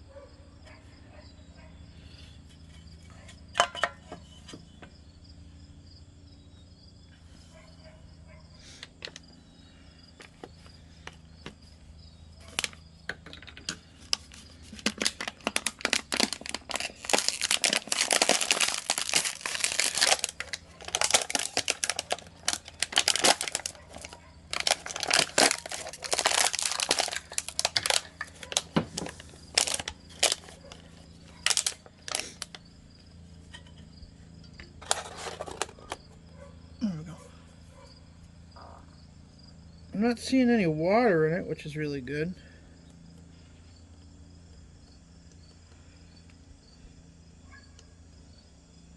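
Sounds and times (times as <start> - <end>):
crinkling rustling handling noise: 12.4 - 12.9, 13.7 - 32.6, 34.8 - 36.0.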